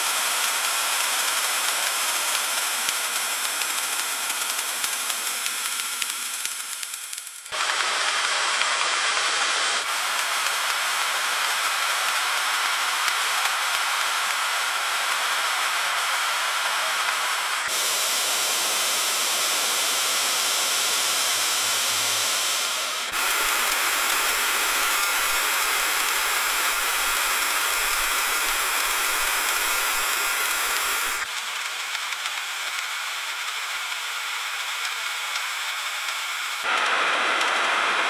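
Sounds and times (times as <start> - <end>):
freezing rain hissing: 23.1 - 31.3, 31.9 - 37.1.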